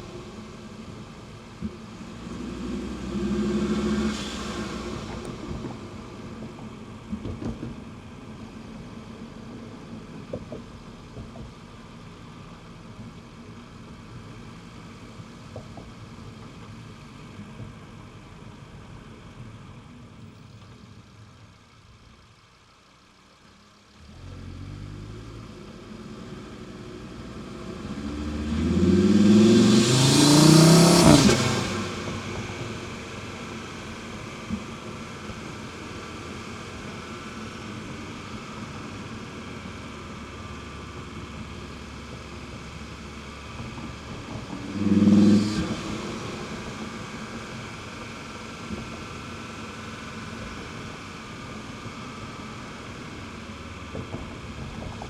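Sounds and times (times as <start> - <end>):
car engine revving: 0.0 - 6.4, 26.4 - 38.7, 43.5 - 49.4.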